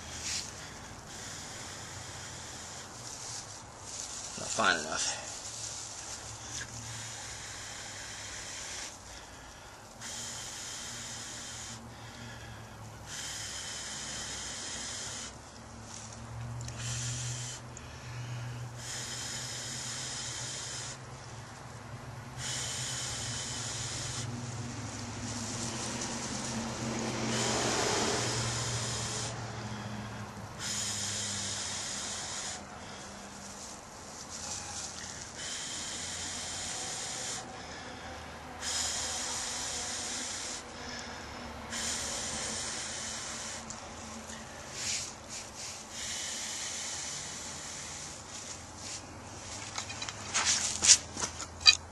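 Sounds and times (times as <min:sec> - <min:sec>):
hand drill spindle scraping and hissing: 0:00.0 - 0:09.2, 0:13.1 - 0:17.9, 0:30.6 - 0:37.5, 0:41.7 - 0:51.9.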